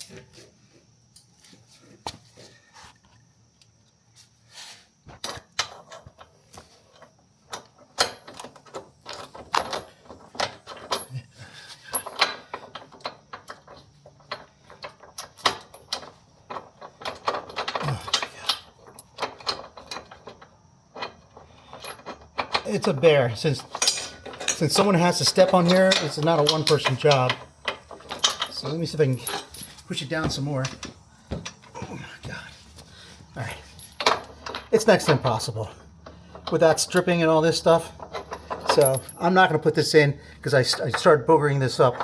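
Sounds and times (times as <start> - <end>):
metal clanks and scrapes: 23.6 - 31.6.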